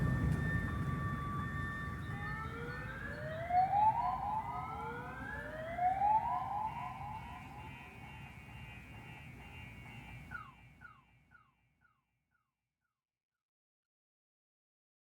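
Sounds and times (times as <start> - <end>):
siren rising wails: 0.0 - 11.0
steady held tone: 0.0 - 11.0.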